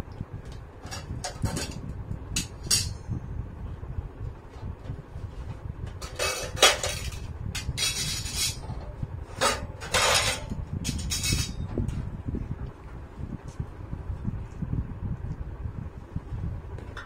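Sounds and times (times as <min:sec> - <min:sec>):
metal clatter and scraping: 0:00.8 - 0:03.1, 0:04.5 - 0:12.0.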